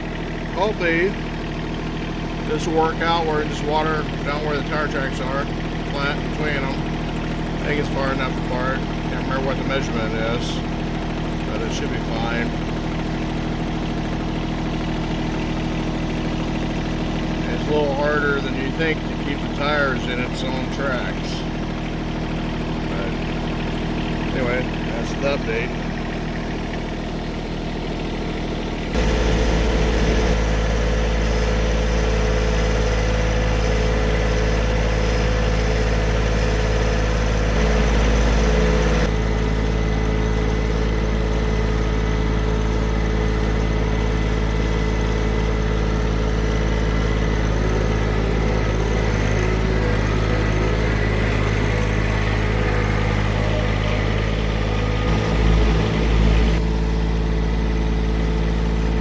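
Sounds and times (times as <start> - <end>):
vehicle engine running: 0.0 - 59.0.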